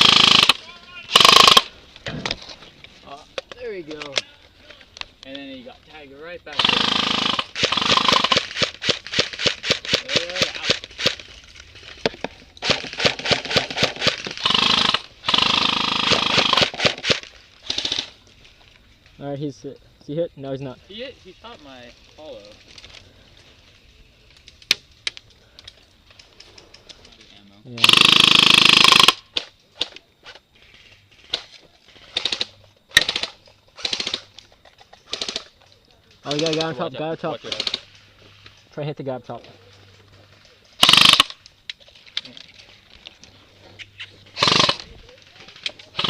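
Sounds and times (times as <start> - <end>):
airsoft gun full-auto bursts: 0.0 - 1.7, 6.6 - 11.2, 12.6 - 18.2, 27.8 - 29.2, 32.1 - 34.3, 40.8 - 41.4, 44.4 - 44.8.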